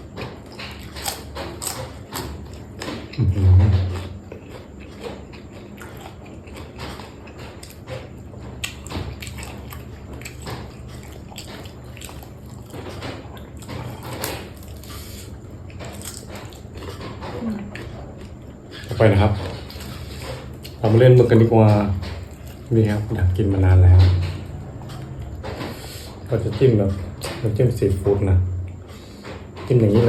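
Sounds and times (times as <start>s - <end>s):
person chewing and lip-smacking: 0.0s - 20.8s
low hum: 3.1s - 4.5s.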